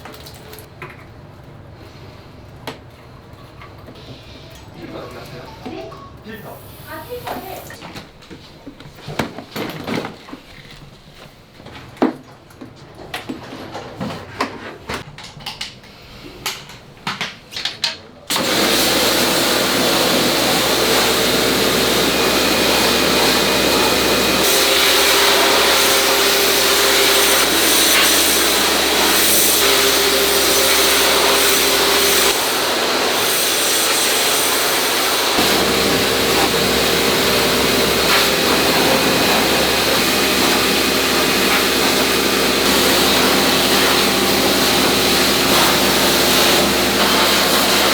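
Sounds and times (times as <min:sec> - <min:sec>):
pressure washer water jet hissing: 0:18.3 - 0:47.9
pump motor hum: 0:18.3 - 0:47.9.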